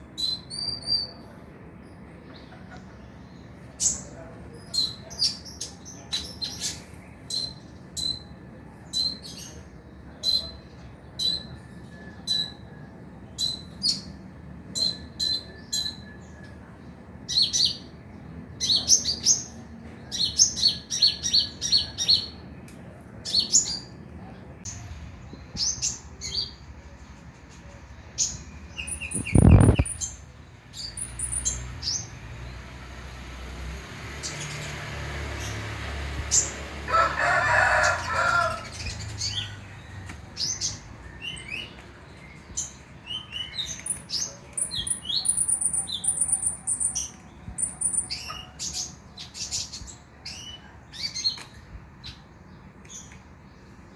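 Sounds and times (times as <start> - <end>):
bird chirping and twittering: 2.2 - 16.6, 24.7 - 36.8, 37.6 - 53.8.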